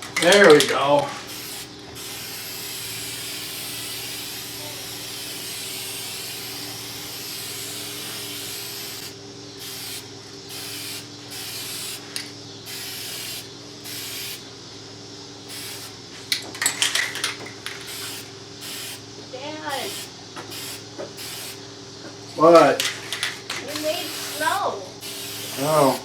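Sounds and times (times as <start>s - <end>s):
aerosol can spraying: 0.0s - 14.5s, 15.5s - 26.0s
sharp clicks: 22.6s - 24.1s.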